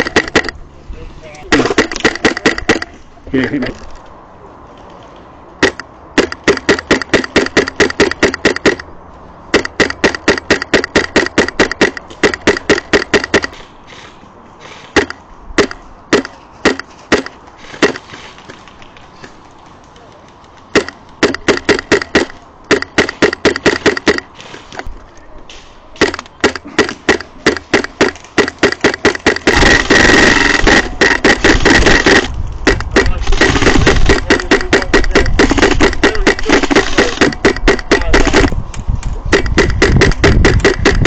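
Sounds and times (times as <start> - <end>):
airsoft rifle firing: 0.0 - 0.5, 1.5 - 2.9, 5.6 - 8.8, 9.5 - 14.0, 14.8 - 18.3, 20.7 - 24.4, 26.0 - 38.6, 39.3 - 41.0.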